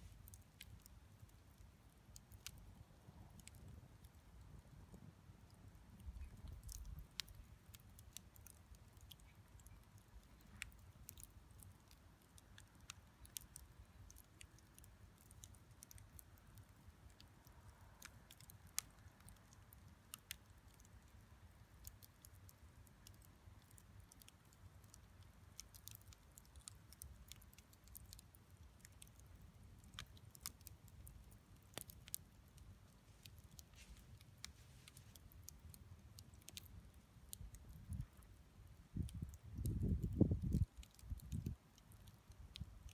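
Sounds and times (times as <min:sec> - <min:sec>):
faint low rumble: 0:00.0 - 0:21.9
campfire crackling and popping: 0:00.0 - 0:42.9.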